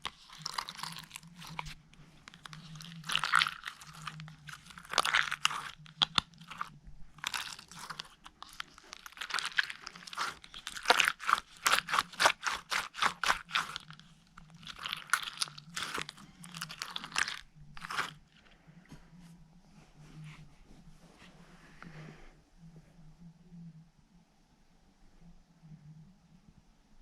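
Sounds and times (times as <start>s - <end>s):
slime crackling pops: 3.0s - 13.9s.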